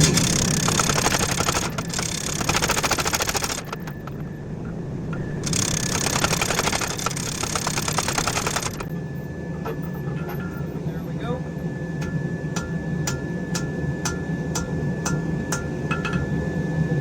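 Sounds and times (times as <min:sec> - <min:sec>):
power hammer pounding metal: 0:00.0 - 0:04.3, 0:05.4 - 0:08.9
steady low hum: 0:00.0 - 0:09.2.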